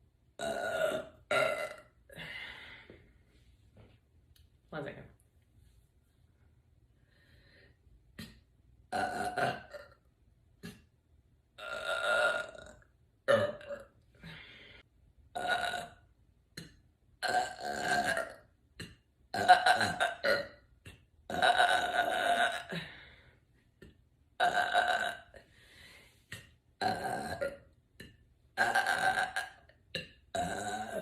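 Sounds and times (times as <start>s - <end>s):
woman belching: 0.4s - 2.0s, 8.2s - 10.0s, 11.6s - 13.9s, 15.4s - 16.0s, 16.6s - 20.6s, 21.3s - 22.9s, 24.4s - 25.4s, 26.8s - 27.7s, 28.6s - 31.0s.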